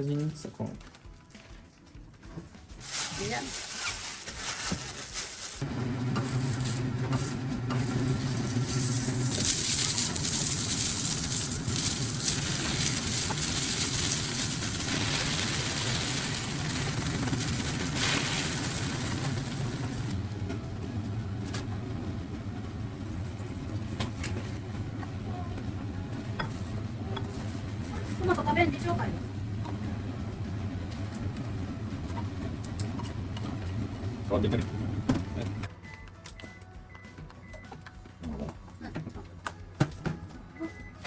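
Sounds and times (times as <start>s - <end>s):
steady low hum: 5.6s - 35.7s
food sizzling in frying pan: 7.8s - 20.1s.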